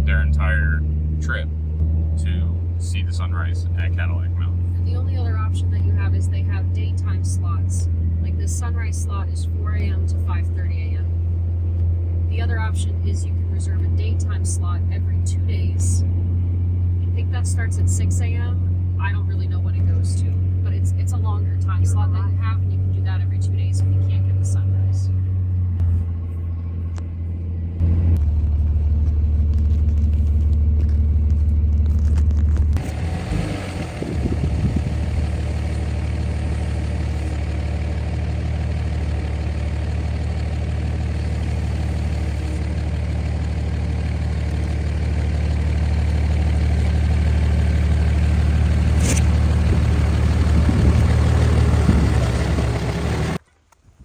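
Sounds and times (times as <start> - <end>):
low engine drone: 0.0 - 53.4
road and wind rush: 0.8 - 53.4
sharp click: 49.0 - 49.3.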